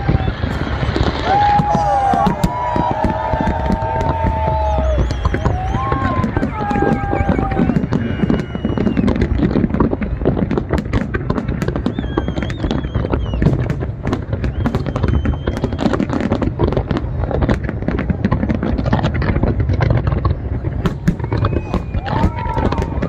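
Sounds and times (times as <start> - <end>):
firecrackers cracking and banging: 0.0 - 23.0
faint whistling: 4.6 - 6.2, 6.8 - 9.1, 11.9 - 13.4, 14.5 - 15.8, 21.2 - 22.0.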